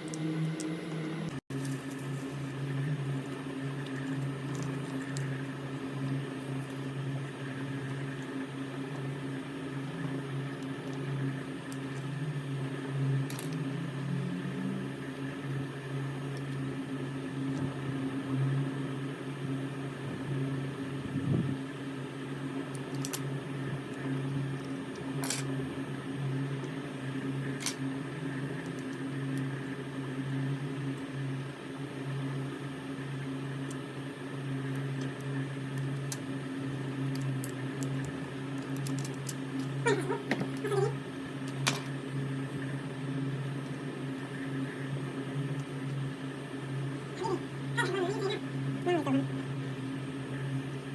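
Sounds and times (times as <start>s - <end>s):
machine hum: 0.0s - 19.1s.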